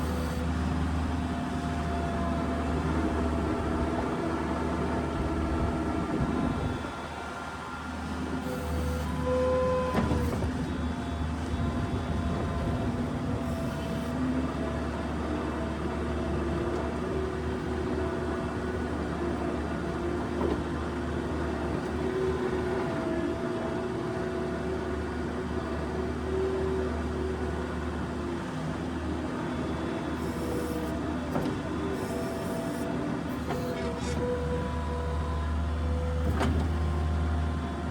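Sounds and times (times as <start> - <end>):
diesel engine running: 0.0 - 23.8.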